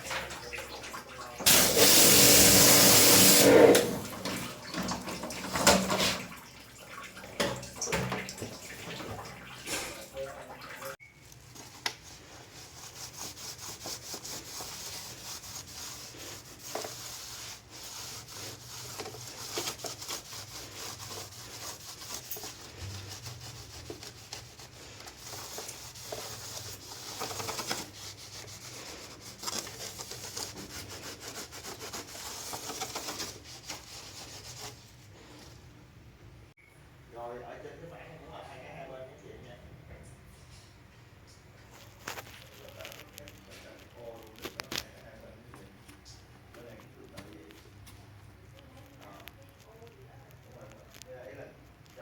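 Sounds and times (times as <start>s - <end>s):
rapid scrubbing strokes: 11.8s - 35.6s.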